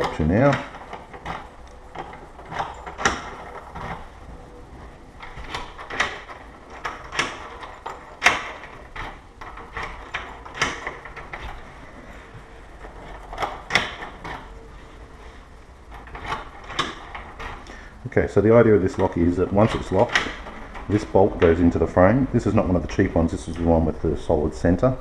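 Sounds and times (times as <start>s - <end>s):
metallic lock clicks and knocks: 0.0s - 4.2s, 5.2s - 12.0s, 12.8s - 14.7s, 15.8s - 17.7s, 18.7s - 21.8s.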